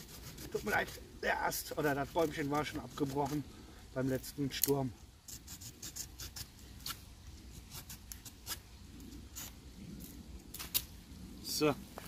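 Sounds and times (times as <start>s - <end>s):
small saw cutting sapling: 0.0s - 1.0s, 1.7s - 3.5s, 4.6s - 8.7s, 9.3s - 11.0s.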